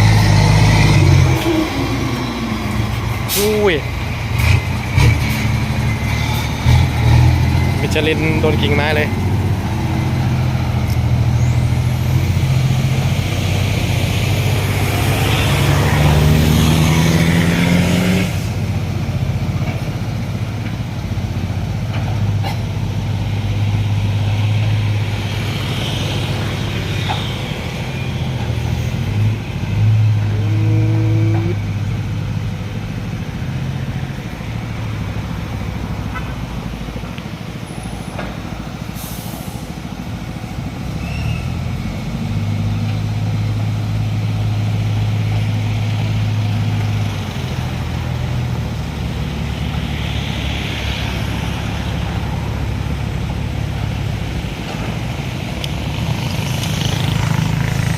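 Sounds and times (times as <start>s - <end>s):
diesel truck engine revving: 0.0s - 57.9s
loud air hiss: 3.1s - 3.8s, 38.9s - 39.8s, 49.0s - 52.9s.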